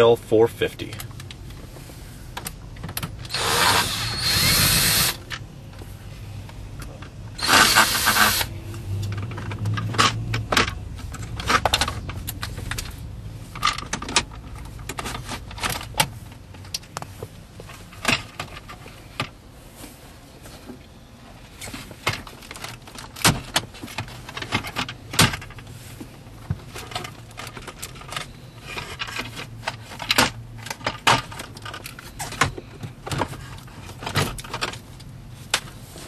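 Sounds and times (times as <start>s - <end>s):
handheld power tool running: 3.3s - 5.2s, 7.4s - 8.5s.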